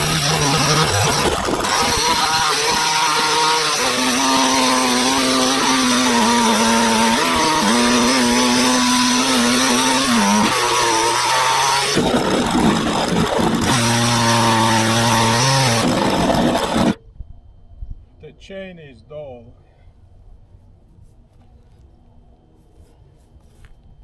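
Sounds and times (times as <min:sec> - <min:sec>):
chainsaw cutting log at high revs: 0:00.0 - 0:17.0.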